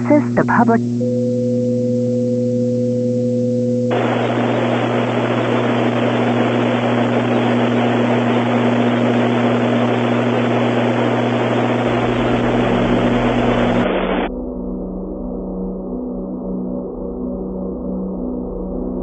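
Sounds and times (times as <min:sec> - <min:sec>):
low droning hum: 0:00.0 - 0:15.6
static hiss: 0:03.8 - 0:14.3.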